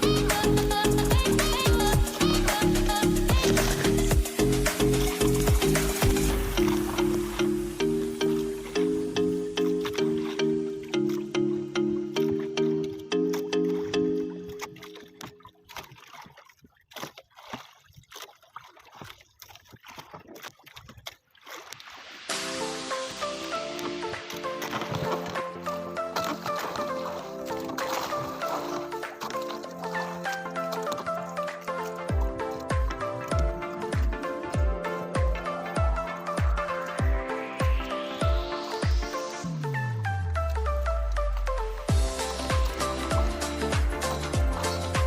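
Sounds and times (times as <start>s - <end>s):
background music: 0.0s - 15.3s, 22.3s - 45.0s
water sloshing and splashing: 0.0s - 45.0s
deep kick drum beat: 1.1s - 2.2s, 3.3s - 6.8s, 32.1s - 39.7s, 41.9s - 45.0s.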